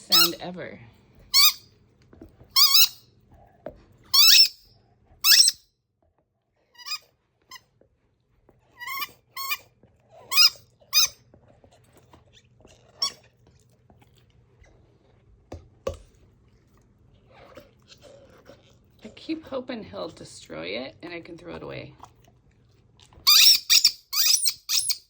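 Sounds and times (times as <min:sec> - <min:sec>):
squeaky toy squeaks: 0:00.0 - 0:00.4, 0:01.3 - 0:01.6, 0:02.5 - 0:03.0, 0:04.1 - 0:04.6, 0:05.2 - 0:05.6, 0:06.8 - 0:07.0, 0:08.8 - 0:11.2, 0:23.2 - 0:25.0
dog chewing: 0:01.1 - 0:05.5, 0:06.8 - 0:19.6, 0:21.3 - 0:24.8.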